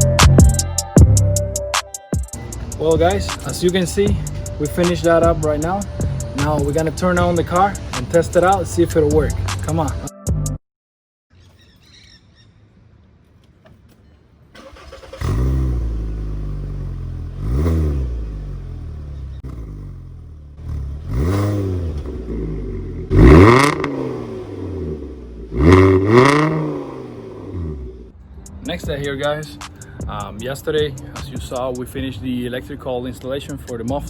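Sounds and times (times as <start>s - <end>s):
car engine cranking and starting: 2.4s - 9.6s, 14.5s - 28.2s
car engine revving: 2.4s - 10.0s, 14.6s - 28.2s.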